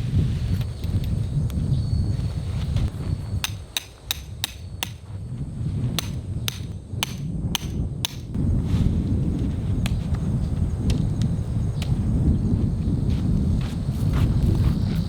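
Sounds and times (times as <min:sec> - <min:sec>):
wind rumbling on microphone: 0:00.0 - 0:15.0
hammer strikes: 0:03.4 - 0:05.0, 0:06.0 - 0:08.4.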